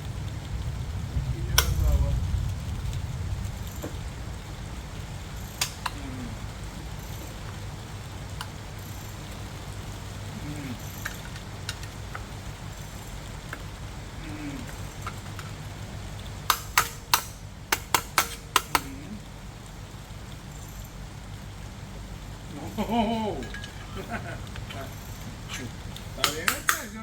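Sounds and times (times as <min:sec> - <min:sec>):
steady low hum: 0:00.0 - 0:27.0
sharp clicks: 0:01.5 - 0:02.0, 0:05.4 - 0:06.0, 0:25.9 - 0:27.0
faint ticks: 0:05.3 - 0:16.6, 0:23.5 - 0:26.9.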